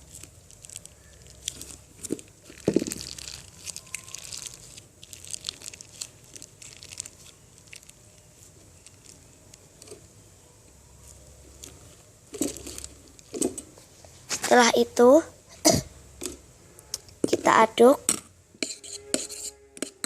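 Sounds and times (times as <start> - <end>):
plastic bottle crinkling: 0.0 - 10.1, 11.0 - 13.6
squeak: 3.4 - 4.5, 18.6 - 20.0.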